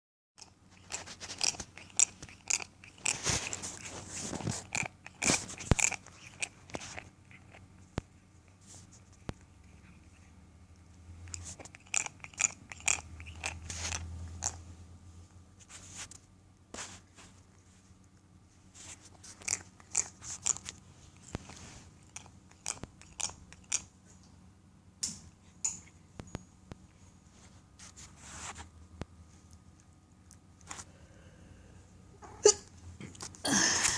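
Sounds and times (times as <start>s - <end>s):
cat grinding its teeth: 0.4s - 7.7s, 11.2s - 14.6s, 18.9s - 23.9s.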